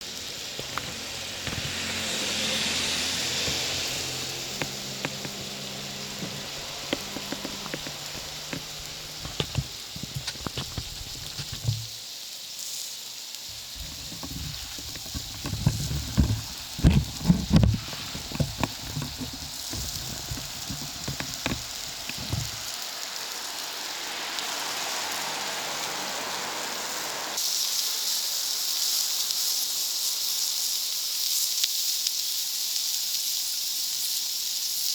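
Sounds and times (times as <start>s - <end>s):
food sizzling on a grill: 0.0s - 34.9s
small crackles and clicks: 3.3s - 12.8s, 13.4s - 23.1s.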